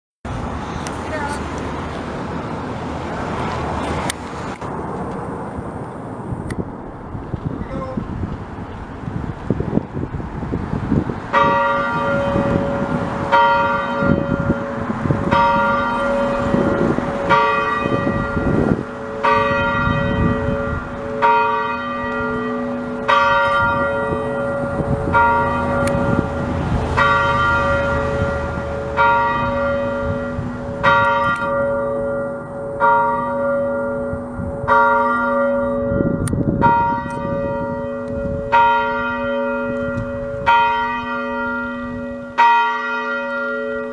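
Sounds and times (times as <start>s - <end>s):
church bell ringing: 11.3s - 43.9s.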